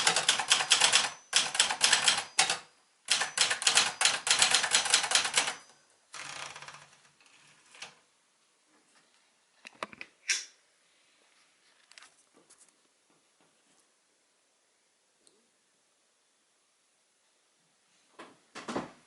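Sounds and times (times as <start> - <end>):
typewriter clicks and clacks: 0.0 - 5.6
typewriter key strikes: 0.0 - 5.6.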